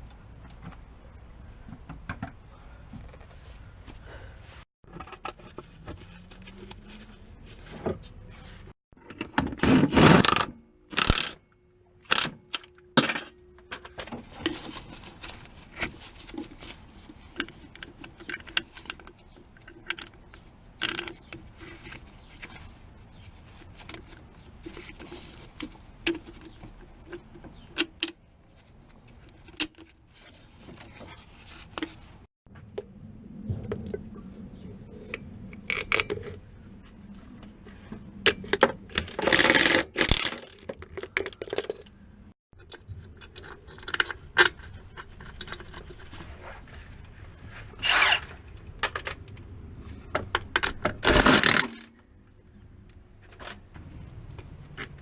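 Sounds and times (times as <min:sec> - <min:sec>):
metal tools clinking and knocking: 0:17.2 - 0:22.0, 0:38.3 - 0:42.0.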